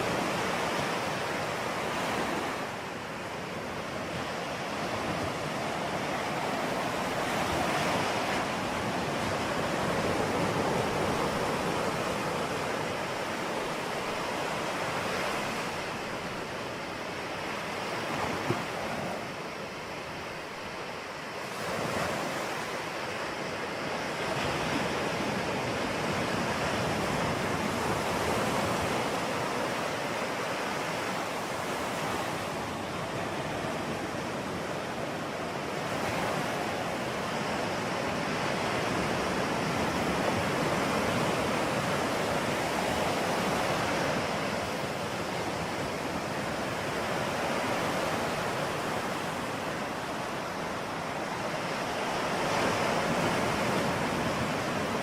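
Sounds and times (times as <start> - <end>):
ocean waves breaking: 0.0 - 55.0.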